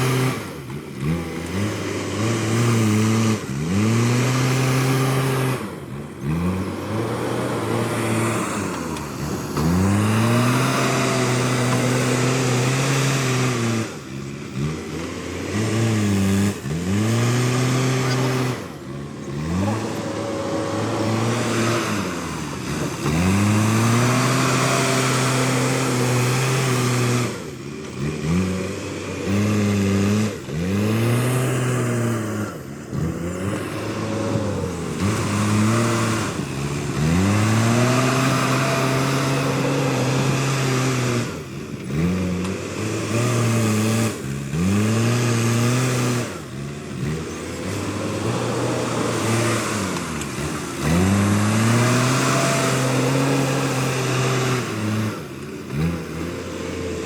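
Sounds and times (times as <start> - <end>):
diesel engine revving: 0.0 - 57.0.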